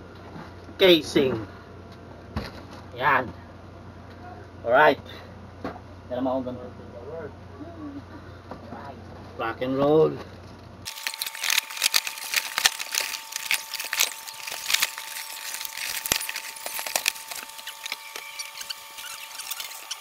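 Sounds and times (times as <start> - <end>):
packaging crackling and rustling: 10.9 - 20.0.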